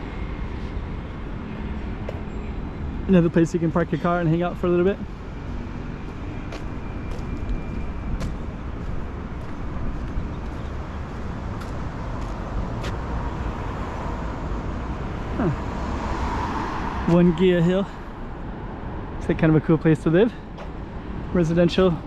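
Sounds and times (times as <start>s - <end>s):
road traffic rumble: 0.0s - 22.0s
vehicle passing: 4.1s - 21.4s.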